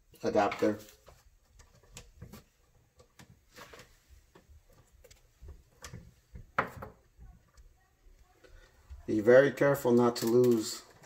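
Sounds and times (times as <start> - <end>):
small clicks and light knocks: 1.0 - 8.8.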